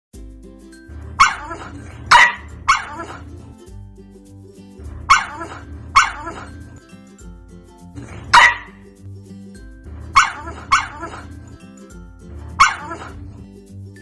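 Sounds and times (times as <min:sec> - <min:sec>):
light background music: 0:00.2 - 0:14.0
dog barking: 0:01.2 - 0:03.3, 0:05.0 - 0:06.6, 0:08.0 - 0:08.8, 0:10.1 - 0:11.5, 0:12.6 - 0:13.4.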